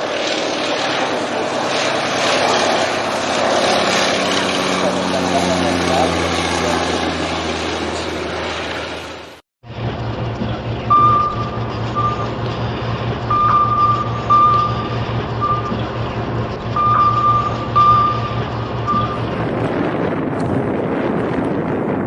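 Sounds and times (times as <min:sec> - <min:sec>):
low machinery drone: 0:00.0 - 0:22.0
short high electronic beeps: 0:10.9 - 0:12.4, 0:13.3 - 0:15.8, 0:16.8 - 0:19.3.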